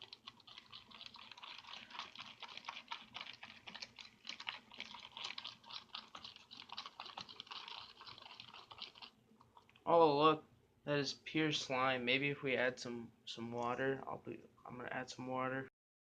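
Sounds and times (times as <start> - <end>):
slime clicking and squelching: 0.0 - 9.9.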